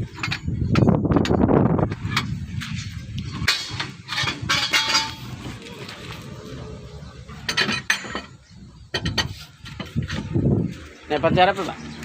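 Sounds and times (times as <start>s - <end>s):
metallic clinking and clattering: 0.0s - 2.4s, 3.3s - 5.6s, 7.4s - 10.3s.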